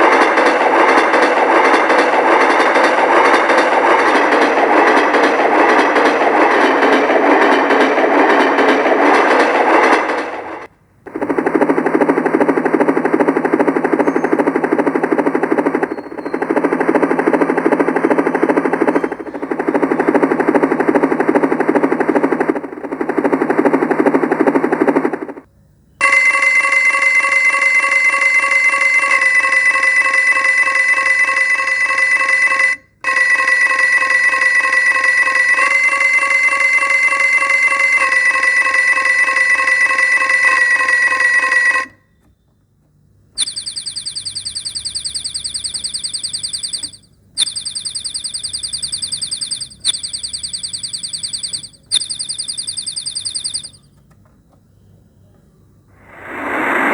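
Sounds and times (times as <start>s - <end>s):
electronic gunfire rattle: 11.1s - 25.4s, 43.4s - 53.8s
electronic telephone ring: 43.4s - 53.9s.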